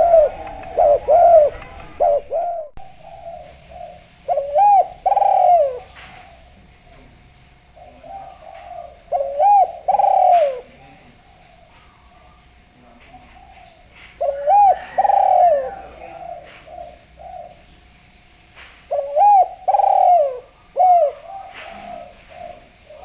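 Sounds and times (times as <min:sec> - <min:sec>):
dove cooing: 0:00.0 - 0:17.9, 0:18.8 - 0:23.0.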